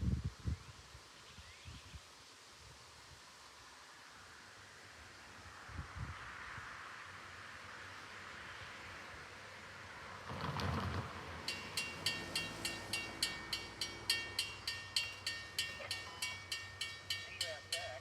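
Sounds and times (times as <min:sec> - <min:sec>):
crossing warning bell ringing: 0:11.5 - 0:18.0.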